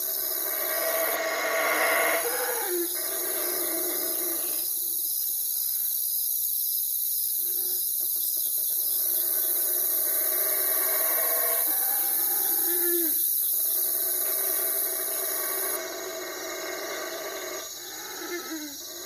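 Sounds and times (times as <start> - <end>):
owl hooting: 0.0 - 4.6
insects chirping: 0.0 - 19.0.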